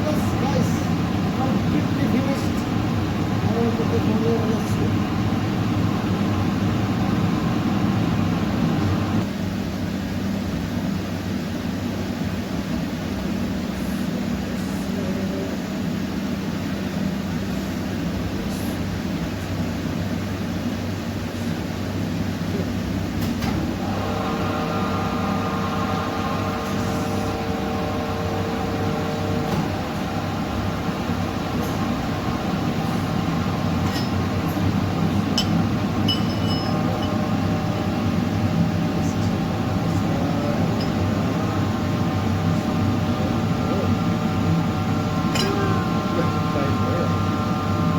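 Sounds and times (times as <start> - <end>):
low even hum: 23.8 - 47.9.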